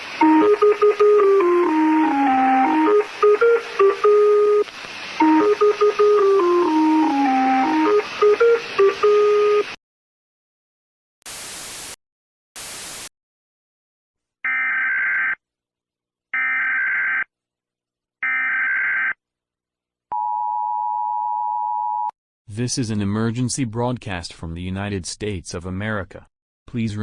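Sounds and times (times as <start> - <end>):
two-tone alert signal: 0.2 - 4.6, 5.2 - 9.8
stepped tone melody: 0.2 - 9.8
static bursts: 11.3 - 12.0.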